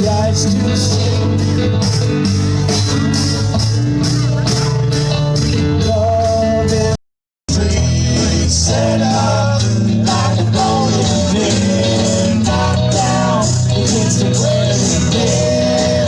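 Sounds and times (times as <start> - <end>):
guitar and bass: 0.0 - 16.0
person singing: 5.8 - 16.0.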